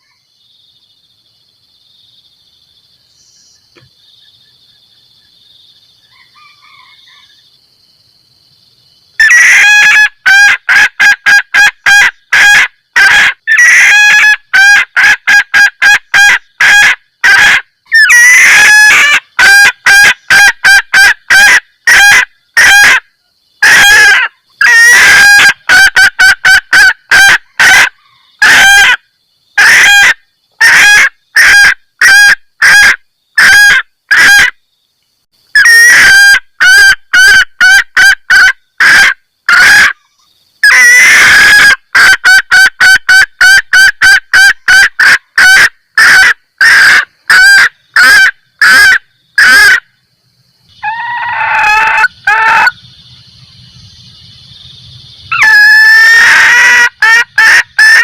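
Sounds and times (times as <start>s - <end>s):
hen cackling clucks: 9.2s - 23.0s, 23.6s - 29.0s, 35.6s - 40.0s, 40.6s - 49.8s, 50.7s - 52.9s, 55.3s - 58.0s.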